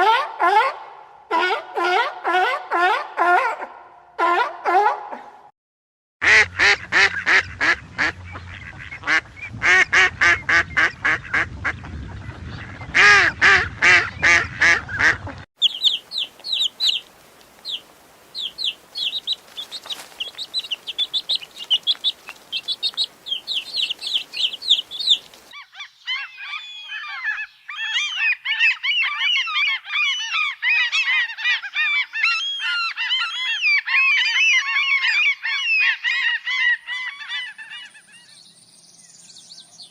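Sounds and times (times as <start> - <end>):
repeated bird calls: 14.2 - 39.9
chatter of many birds: 14.9 - 38.6
faint hiss: 15.6 - 25.5
sharp high bird chirps: 15.6 - 25.6.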